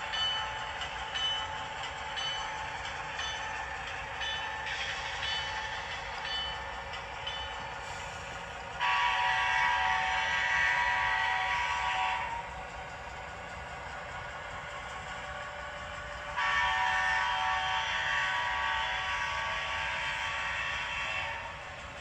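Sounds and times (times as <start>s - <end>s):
long horn blast: 8.8s - 12.3s, 16.4s - 21.5s.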